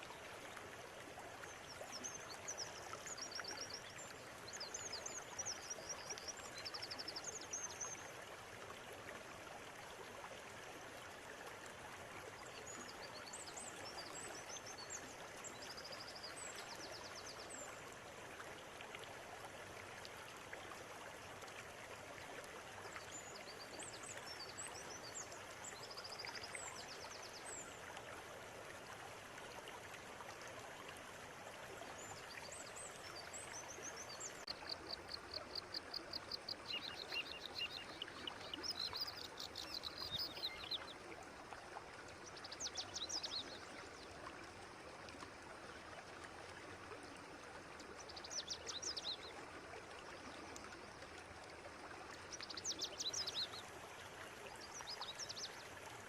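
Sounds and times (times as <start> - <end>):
river flowing: 0.0 - 56.0
birds chirping and trilling: 34.6 - 40.8.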